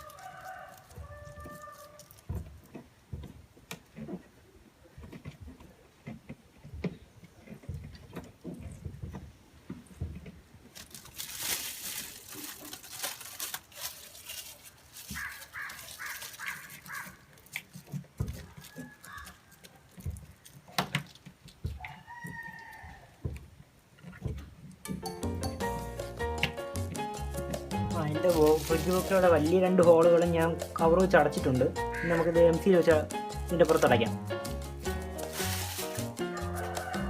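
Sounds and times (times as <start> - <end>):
plastic rustling: 0.0 - 3.3, 7.5 - 22.4, 27.5 - 30.3, 32.8 - 34.2, 34.8 - 37.0
plastic sheet handling noises: 0.0 - 3.3, 8.7 - 21.9, 27.8 - 30.3, 32.8 - 34.2, 34.8 - 37.0
bird calling: 15.1 - 17.3.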